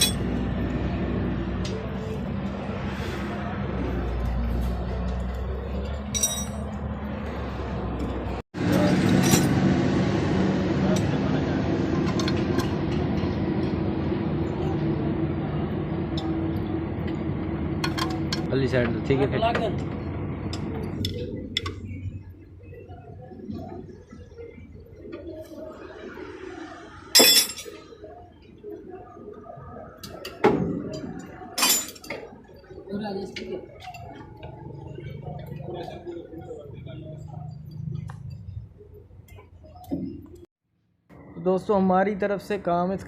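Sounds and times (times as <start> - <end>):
metal tools clanking: 0.0 - 0.3, 5.8 - 6.8, 8.8 - 9.6, 27.2 - 27.8, 31.6 - 32.2
machine running with low hum: 7.4 - 26.3.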